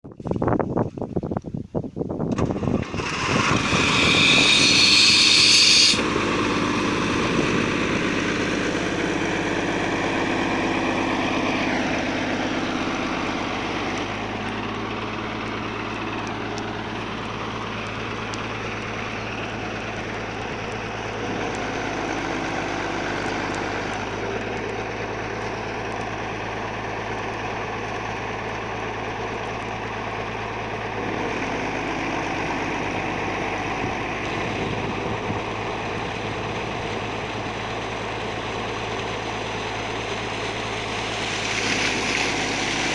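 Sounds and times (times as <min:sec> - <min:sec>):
compressor humming: 0:02.1 - 0:42.9
loud hiss: 0:03.0 - 0:06.2.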